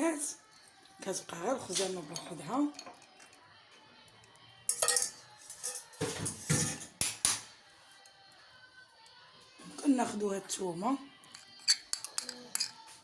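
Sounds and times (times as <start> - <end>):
faint background music: 0.0 - 13.0
dishware clattering: 4.7 - 7.0, 11.4 - 12.9.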